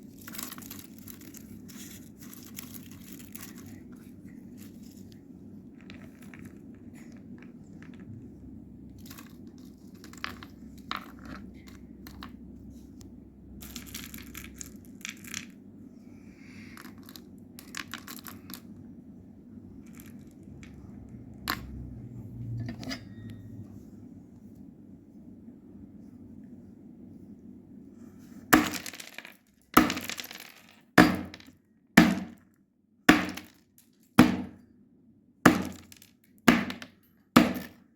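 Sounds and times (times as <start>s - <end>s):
low hum: 18.6s - 28.4s.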